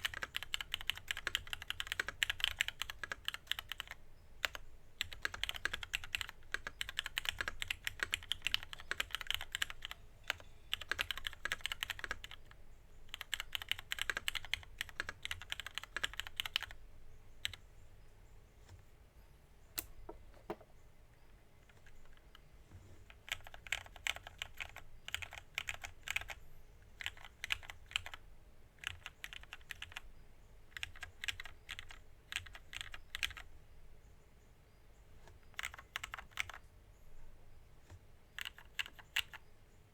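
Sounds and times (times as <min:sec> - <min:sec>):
mechanical keyboard typing: 0:00.0 - 0:16.8, 0:23.2 - 0:26.4, 0:27.0 - 0:28.2, 0:28.8 - 0:30.0, 0:30.7 - 0:33.5, 0:35.6 - 0:36.6, 0:38.4 - 0:39.4.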